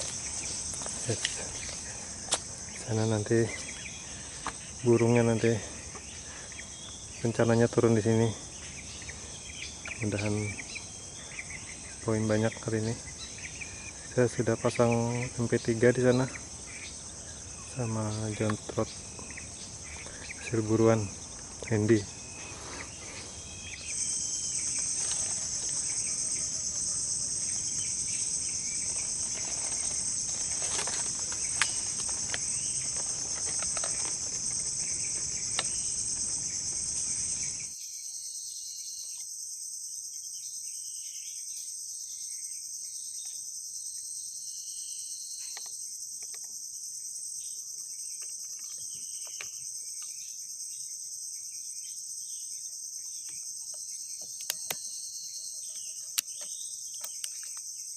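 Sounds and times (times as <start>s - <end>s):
high-pitched insect chorus: 0.0s - 57.9s
sharp clicks: 54.3s - 54.9s, 55.8s - 57.7s.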